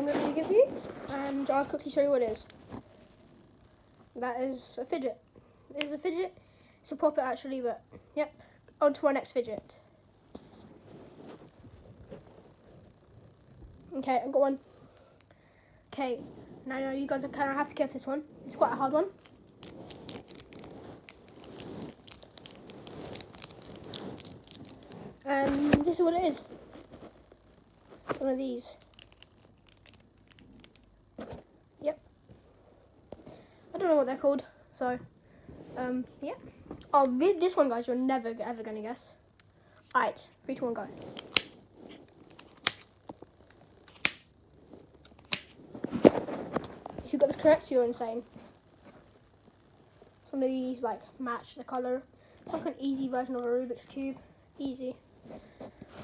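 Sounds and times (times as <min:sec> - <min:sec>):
crinkly scraping rustle: 0:00.0 - 0:03.2, 0:10.4 - 0:14.6, 0:16.0 - 0:31.4, 0:40.6 - 0:43.4, 0:44.6 - 0:49.2
fidget toy clicks: 0:19.2 - 0:25.0
puzzle cube twisting clicks: 0:19.2 - 0:26.3, 0:28.0 - 0:30.9, 0:41.1 - 0:41.6, 0:42.3 - 0:42.9, 0:43.5 - 0:44.3, 0:45.1 - 0:45.5.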